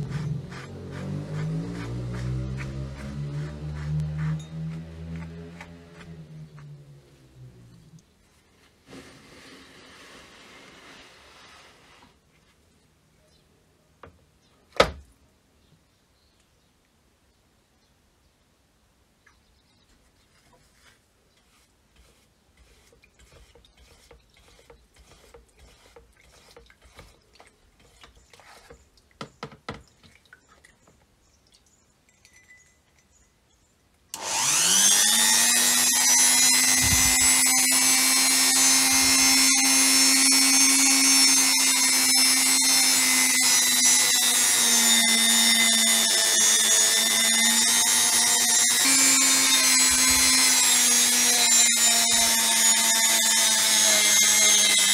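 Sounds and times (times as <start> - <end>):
power tool motor whine: 34.2 - 54.9.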